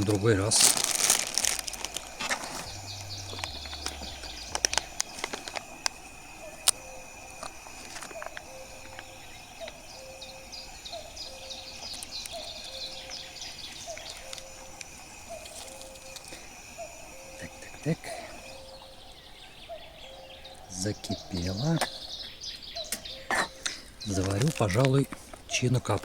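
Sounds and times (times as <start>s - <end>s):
high bird chirps: 1.4s - 17.1s
bird low two-note call: 2.7s - 5.2s.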